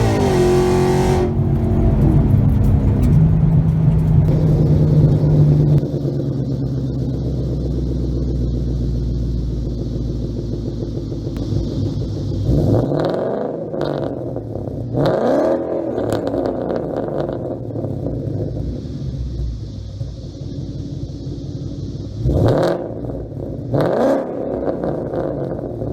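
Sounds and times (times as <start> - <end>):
car engine idling and revving: 0.0 - 25.9.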